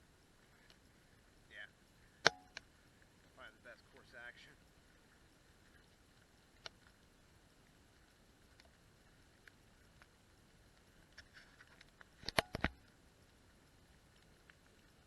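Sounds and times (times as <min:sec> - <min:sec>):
faint background hiss: 0:00.0 - 0:15.0
light ticks: 0:05.7 - 0:07.1, 0:07.9 - 0:15.0
sharp clicks or knocks: 0:12.2 - 0:12.8.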